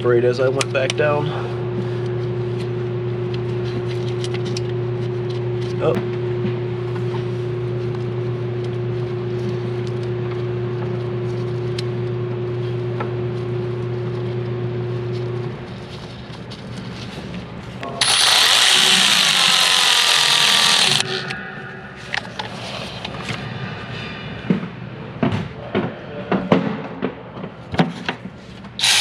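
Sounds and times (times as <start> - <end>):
steady hum: 1.2 - 23.8
power ratchet whining: 17.8 - 21.3, 28.8 - 29.0.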